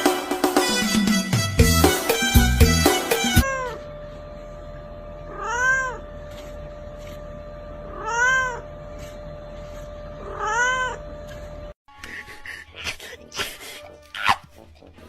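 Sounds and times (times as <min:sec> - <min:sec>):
cat meowing: 0:03.4 - 0:03.8, 0:05.3 - 0:06.0, 0:07.9 - 0:08.7, 0:10.2 - 0:11.0.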